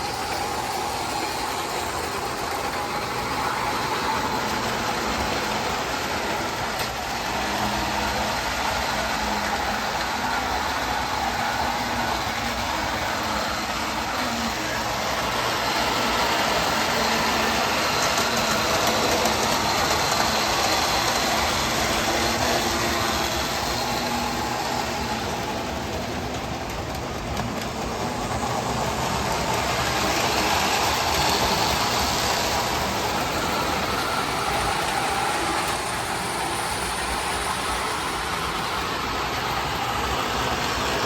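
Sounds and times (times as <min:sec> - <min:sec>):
model train motor whirring: 0:00.0 - 0:41.0
wheels rattling on rails: 0:00.0 - 0:41.0.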